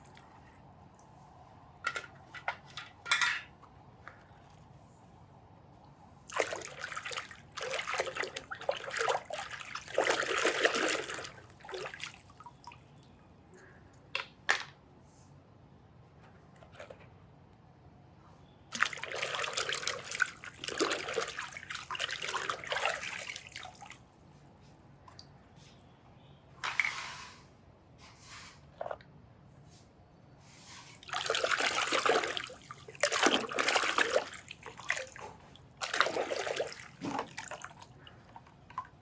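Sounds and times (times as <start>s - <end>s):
water running and sloshing: 6.3s - 13.0s, 18.7s - 24.1s, 30.9s - 39.0s.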